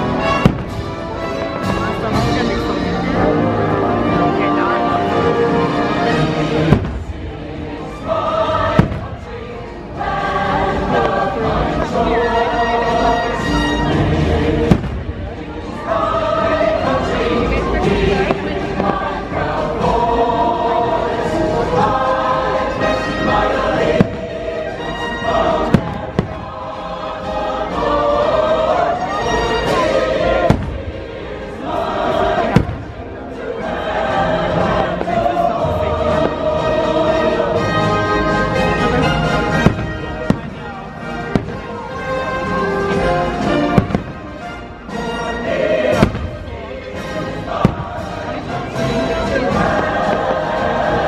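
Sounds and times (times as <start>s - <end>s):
firework bangs: 0.0s - 2.5s, 6.6s - 9.5s, 14.5s - 15.6s, 18.1s - 19.3s, 22.8s - 26.7s, 29.6s - 31.3s, 31.9s - 33.1s, 38.9s - 42.4s, 43.5s - 44.6s, 45.8s - 48.8s
music with choir singing: 0.0s - 51.0s.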